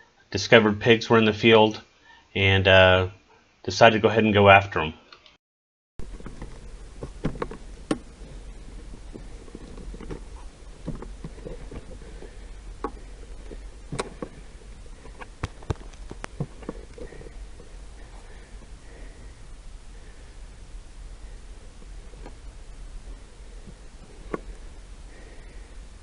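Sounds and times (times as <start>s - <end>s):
handling clicks and rustling: 6.0s - 19.2s, 23.2s - 25.5s
steady low hum: 6.0s - 26.0s.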